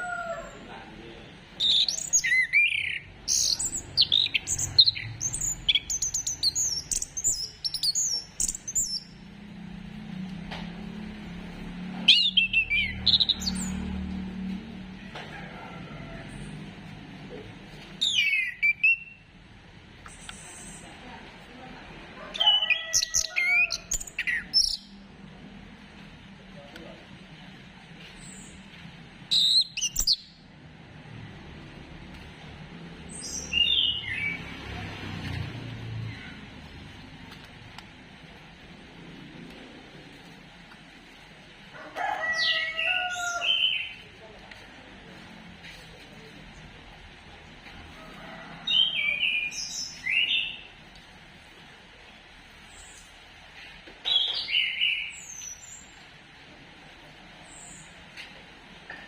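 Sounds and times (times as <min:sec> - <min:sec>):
bird whistled song: 0:01.6 - 0:09.1, 0:18.0 - 0:19.2.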